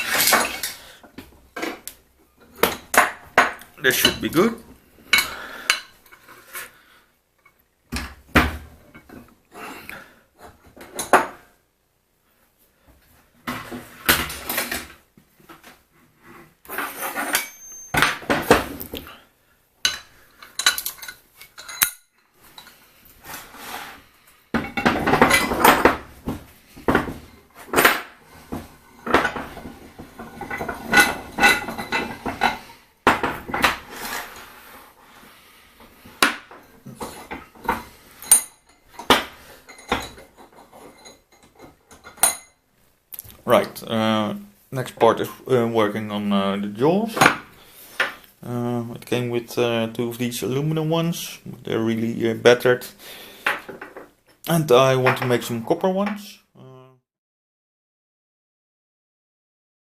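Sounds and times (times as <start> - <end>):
metal tools clinking: 17.1 - 18.3, 19.9 - 22.8, 37.0 - 42.6.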